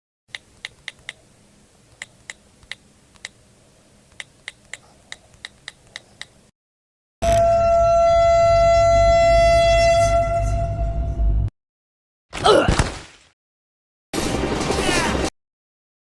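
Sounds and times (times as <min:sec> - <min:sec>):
sharp irregular clicks: 0:00.3 - 0:01.2, 0:01.9 - 0:03.4, 0:04.1 - 0:06.4
loud steady horn-like tone: 0:07.2 - 0:11.5.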